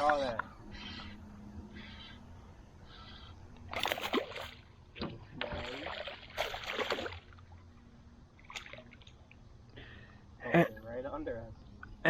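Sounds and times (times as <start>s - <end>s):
water splashing around boat: 3.7s - 7.6s.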